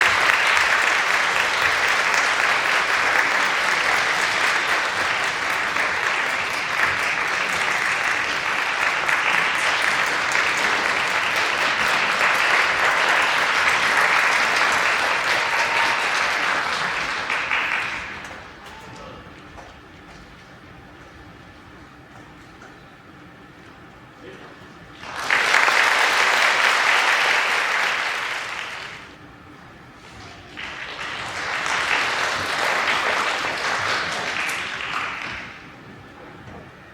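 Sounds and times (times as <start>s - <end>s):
audience applauding: 0.0s - 19.3s, 25.0s - 29.2s, 30.4s - 36.2s.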